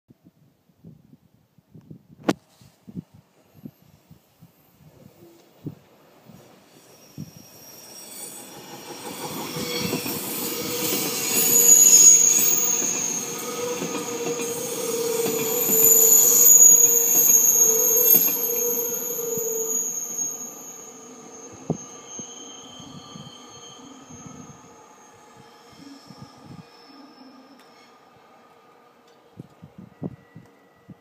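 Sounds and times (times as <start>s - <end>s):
train wheels squealing: 6.2s - 28.7s, 29.6s - 31.0s
train rumble: 8.4s - 19.6s.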